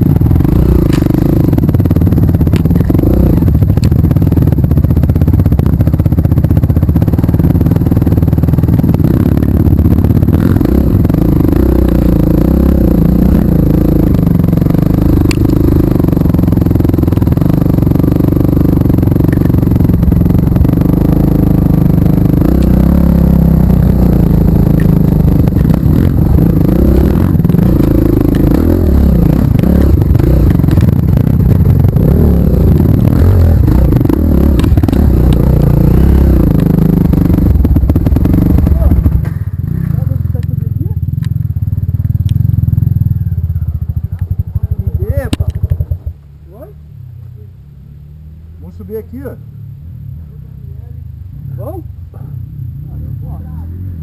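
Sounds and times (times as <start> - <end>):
rattling and scraping: 0.0 - 12.3, 13.1 - 40.5
motorcycle engine running: 0.0 - 54.0.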